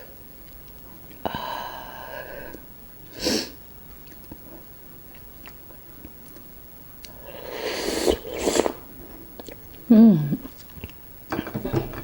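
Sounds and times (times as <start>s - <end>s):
wet chewing clicks: 3.9s - 7.2s, 9.4s - 11.0s
slurping: 7.0s - 8.8s.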